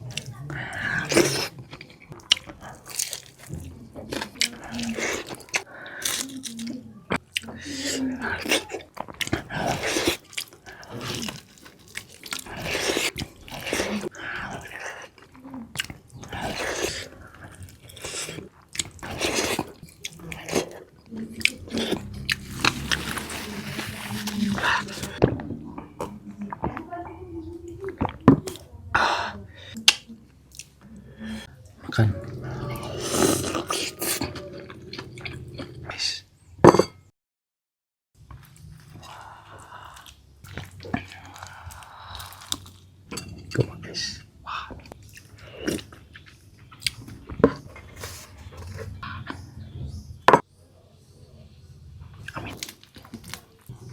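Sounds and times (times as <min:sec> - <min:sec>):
person chewing food: 0:00.0 - 0:26.7, 0:29.8 - 0:36.0, 0:38.2 - 0:49.5, 0:52.2 - 0:53.9
wet chewing and mouth smacks: 0:08.9 - 0:20.8, 0:38.3 - 0:42.8.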